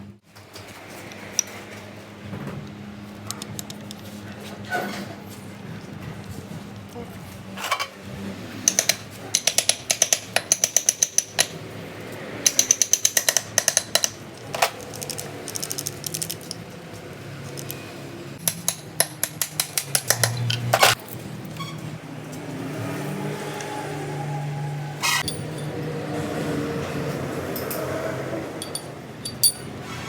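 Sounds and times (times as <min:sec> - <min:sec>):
rapid sharp metallic clicks: 0:08.6 - 0:11.6, 0:12.5 - 0:16.6.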